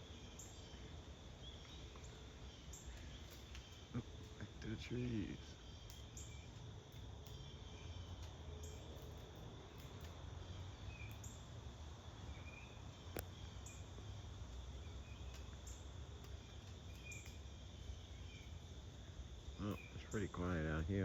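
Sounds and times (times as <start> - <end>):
insects trilling: 0.0 - 21.0
bird chirps: 16.4 - 18.6.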